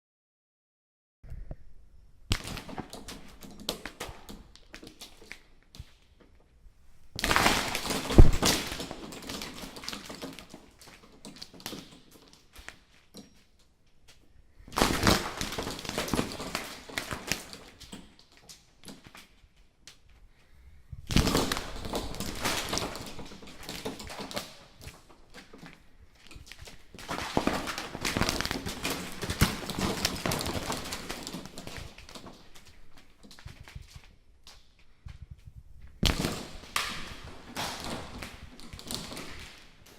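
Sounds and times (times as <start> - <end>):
plastic strip curtain slapping: 2.3 - 6.1, 7.2 - 13.0, 14.7 - 19.3, 21.1 - 34.1, 36.0 - 39.9
plastic strips rustling: 7.0 - 20.3, 21.1 - 39.9.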